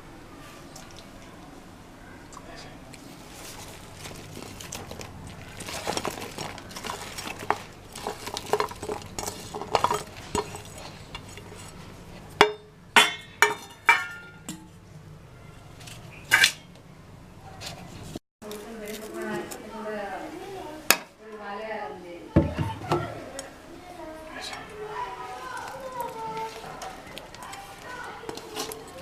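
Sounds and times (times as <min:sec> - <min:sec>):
spoon scraping metal pot: 0:06.8 - 0:11.8.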